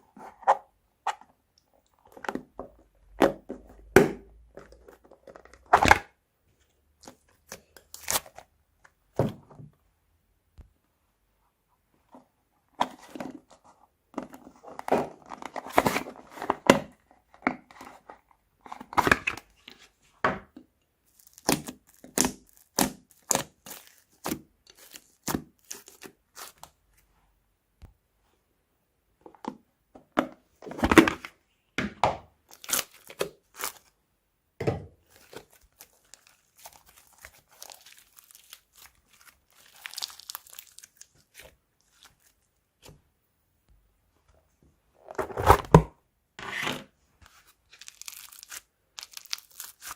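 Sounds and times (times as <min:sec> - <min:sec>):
crunchy slime crackling: 0:21.1 - 0:26.6, 0:35.1 - 0:42.4, 0:47.7 - 0:49.9.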